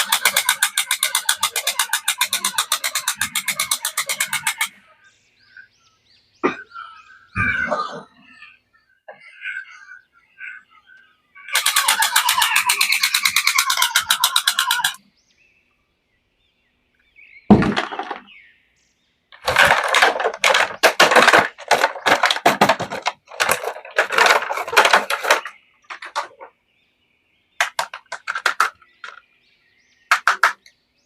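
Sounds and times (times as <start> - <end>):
packaging crackling and clicking: 19.4 - 26.5.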